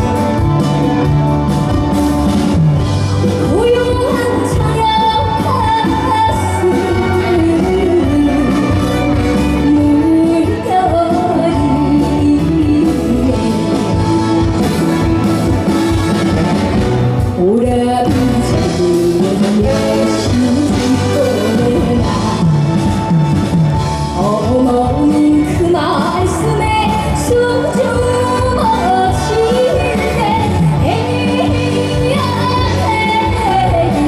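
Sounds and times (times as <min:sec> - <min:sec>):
band accompaniment: 0:00.0 - 0:34.0
person singing: 0:17.2 - 0:22.7, 0:24.1 - 0:34.0.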